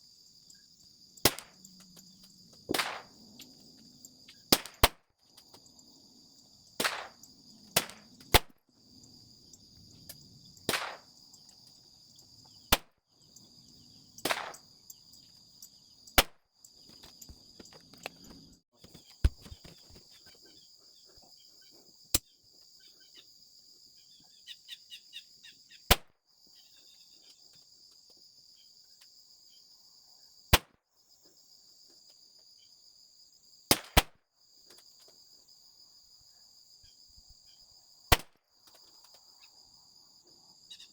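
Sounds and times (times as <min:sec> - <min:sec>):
insect buzz: 0:00.0 - 0:33.8, 0:34.4 - 0:40.9
pistol shots: 0:01.3 - 0:01.6, 0:02.7 - 0:03.2, 0:04.5 - 0:05.0, 0:06.8 - 0:07.2, 0:07.8 - 0:08.5, 0:10.7 - 0:11.1, 0:14.2 - 0:14.7.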